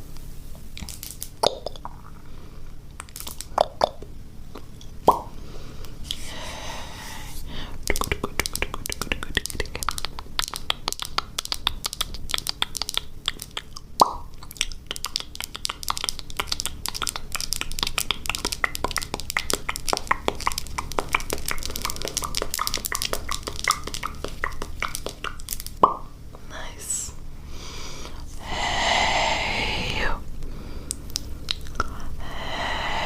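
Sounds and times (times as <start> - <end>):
wet mouth clicking: 0.8 - 2.2, 3.0 - 5.3, 7.8 - 26.1, 30.9 - 33.0.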